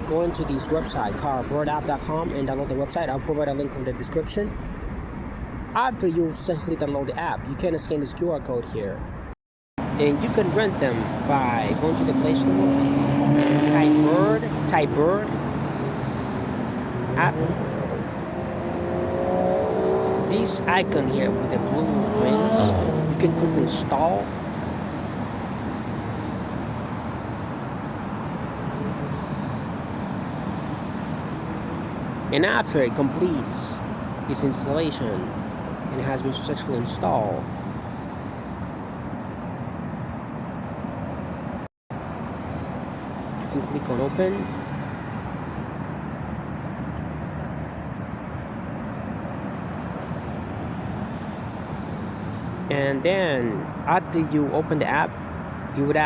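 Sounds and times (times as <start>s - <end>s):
city street traffic rumble: 0.0s - 56.0s.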